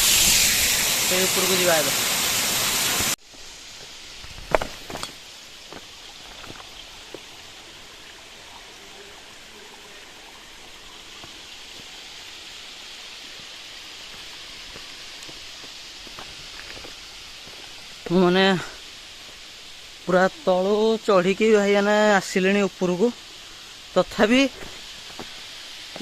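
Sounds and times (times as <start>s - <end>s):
water rushing from small waterfall: 0.0s - 26.0s.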